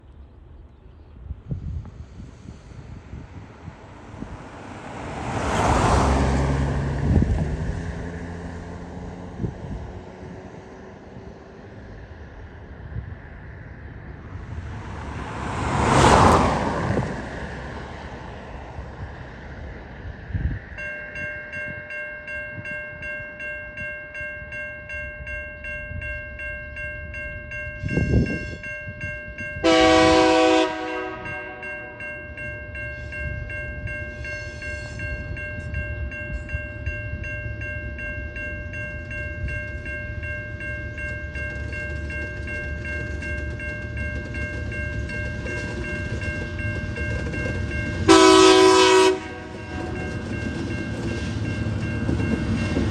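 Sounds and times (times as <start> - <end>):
diesel locomotive engine rumble: 0.0 - 52.9
level crossing bell ringing: 20.8 - 52.8
train horn: 29.6 - 32.0, 48.1 - 50.0.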